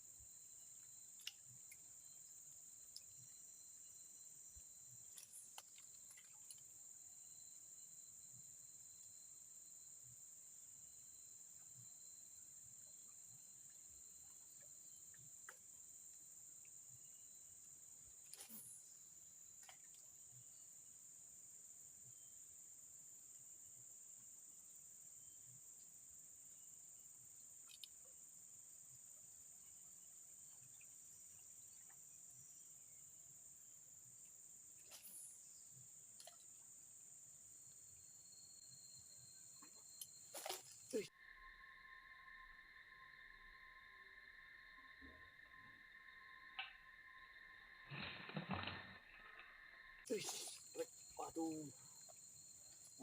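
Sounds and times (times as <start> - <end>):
high-pitched insect chorus: 0.0 - 53.0.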